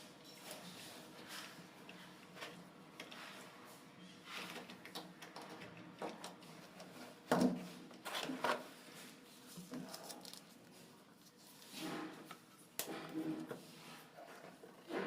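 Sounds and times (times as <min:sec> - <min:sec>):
knocks and scrapes of parts: 0:11.6 - 0:15.0.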